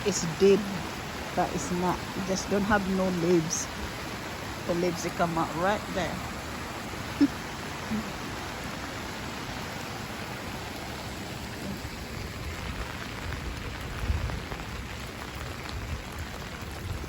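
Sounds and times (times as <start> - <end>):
steady rain falling: 0.0 - 17.0.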